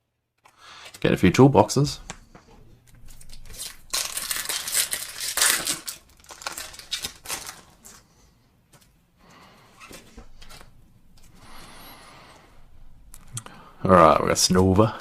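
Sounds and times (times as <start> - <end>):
handling of cards: 2.0 - 8.1, 8.7 - 9.0, 9.8 - 11.4
foil wrapper crinkling and tearing: 3.0 - 8.0.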